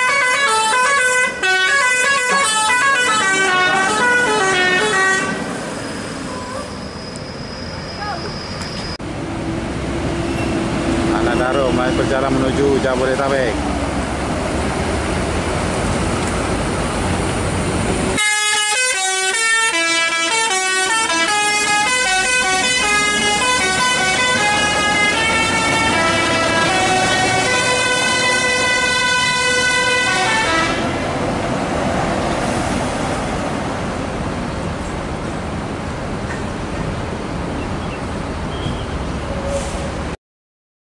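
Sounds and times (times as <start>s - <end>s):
bus multi-tone horn melody: 0.0s - 5.7s, 18.1s - 31.1s
engine and traffic noise: 0.0s - 40.2s.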